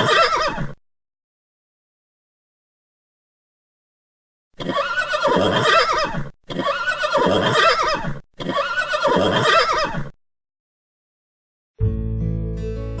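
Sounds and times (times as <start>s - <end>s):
horse whinnying: 0.0s - 0.8s, 4.6s - 10.2s.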